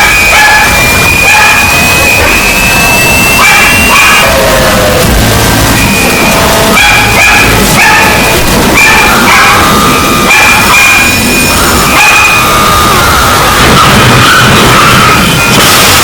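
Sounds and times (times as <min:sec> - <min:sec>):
distorted alarm clock tones: 0:00.0 - 0:16.0.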